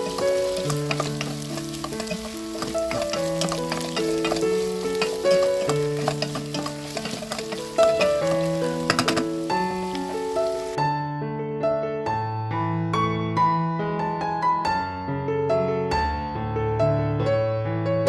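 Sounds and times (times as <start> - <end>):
utensil clicking while stirring: 0.0 - 10.7
food sizzling in a pan: 0.0 - 10.8
soft background music: 0.0 - 10.8.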